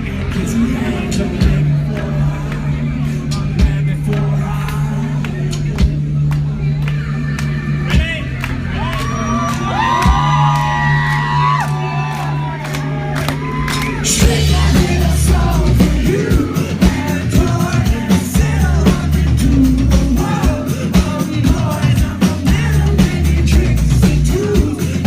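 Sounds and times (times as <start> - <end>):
bass notes: 0.0 - 25.0
drum beat: 3.6 - 4.8, 9.8 - 11.7, 12.7 - 25.0
crowd shouting: 7.0 - 18.3
person singing: 14.0 - 25.0.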